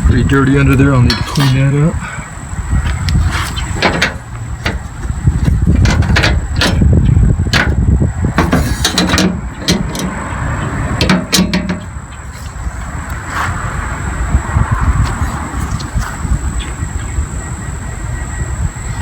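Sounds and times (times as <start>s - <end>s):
steady low rumble: 0.0s - 19.0s
sharp clicks and knocks: 0.7s - 1.7s, 3.0s - 12.5s.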